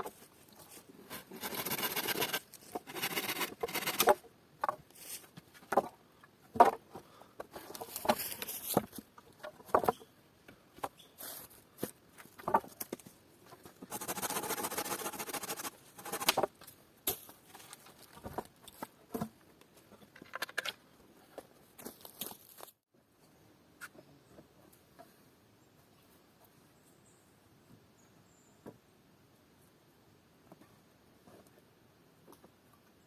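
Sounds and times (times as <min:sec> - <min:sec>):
rasping scrape: 0:01.1 - 0:04.2.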